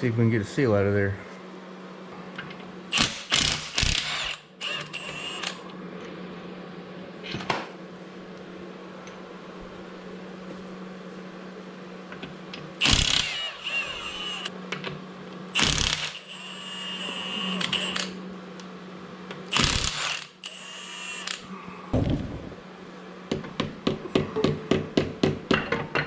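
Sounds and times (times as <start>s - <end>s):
steady low hum: 21.2s - 25.2s.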